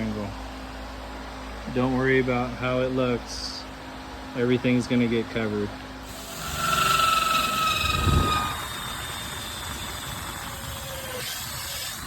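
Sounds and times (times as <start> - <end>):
power drill cutting plastic: 6.1 - 12.0.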